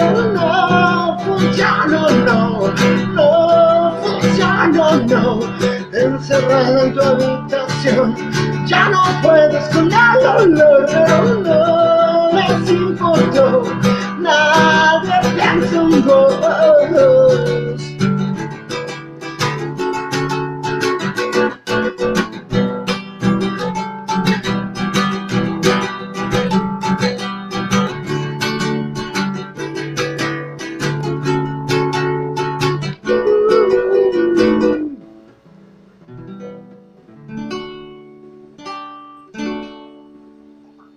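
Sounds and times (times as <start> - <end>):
acoustic guitar strumming: 0.0 - 40.9.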